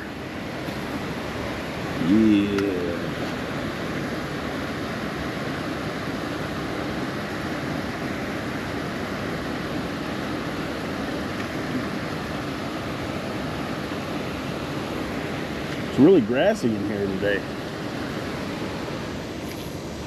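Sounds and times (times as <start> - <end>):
water rushing over spillway: 0.0 - 20.0.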